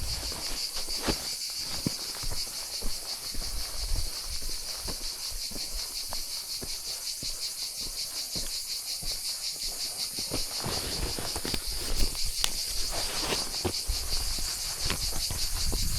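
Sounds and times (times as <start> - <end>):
insects chirping: 0.0 - 15.9
clicks and crunches: 10.5 - 13.8.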